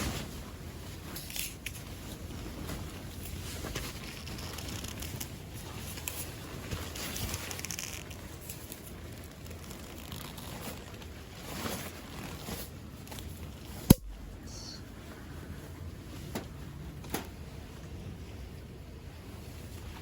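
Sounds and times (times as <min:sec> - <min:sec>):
crackles: 0:00.0 - 0:17.3
sharp loud snap: 0:13.9 - 0:14.5.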